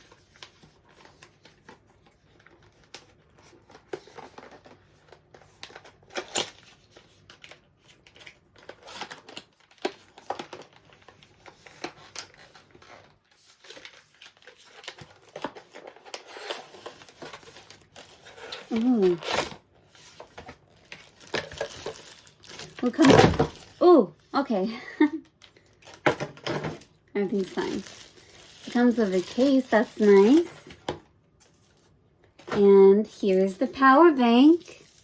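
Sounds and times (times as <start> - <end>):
packaging rustling and crinkling: 0.0 - 35.0.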